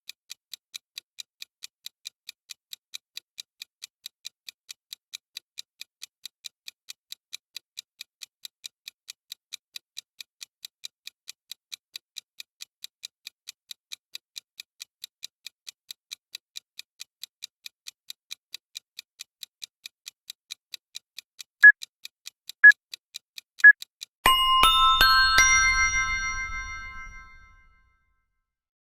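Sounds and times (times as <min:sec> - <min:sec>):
timer ticking: 0:23.6 - 0:23.9.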